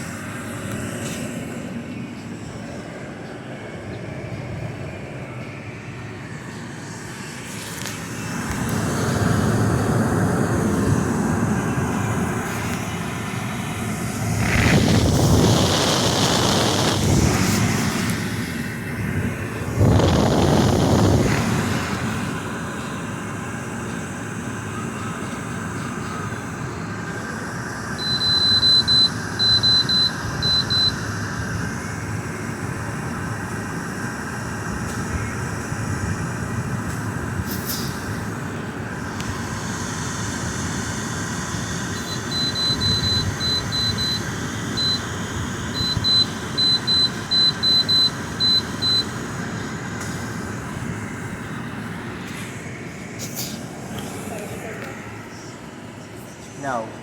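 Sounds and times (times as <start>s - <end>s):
dehumidifier fan running: 0.0s - 57.0s
short high beeps: 28.0s - 31.0s.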